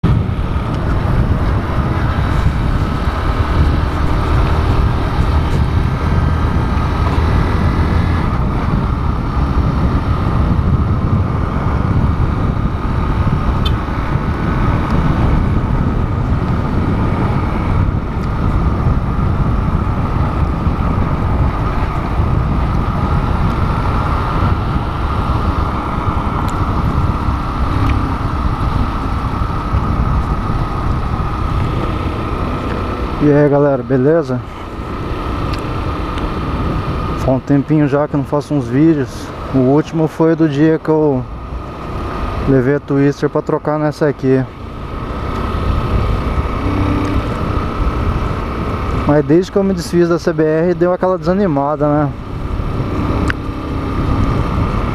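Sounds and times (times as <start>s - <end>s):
motorcycle engine running: 0.0s - 38.6s, 44.4s - 49.8s, 50.4s - 54.9s
wind on microphone: 0.0s - 43.0s, 43.6s - 54.9s.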